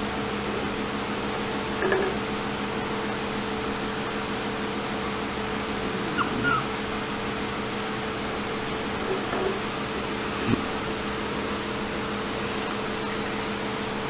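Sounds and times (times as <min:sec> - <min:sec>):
background machinery hum and hiss: 0:00.0 - 0:14.0
faint short squeaks: 0:06.2 - 0:06.7.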